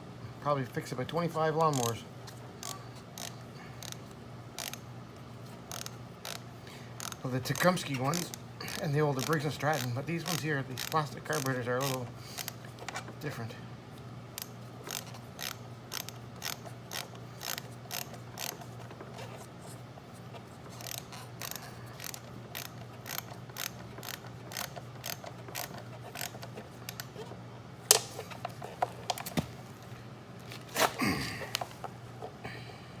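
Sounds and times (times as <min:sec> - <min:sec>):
ratchet wrench clicking: 0:02.6 - 0:04.0, 0:04.6 - 0:04.8, 0:05.7 - 0:06.4, 0:07.0 - 0:12.6, 0:14.4 - 0:18.8, 0:20.7 - 0:27.3.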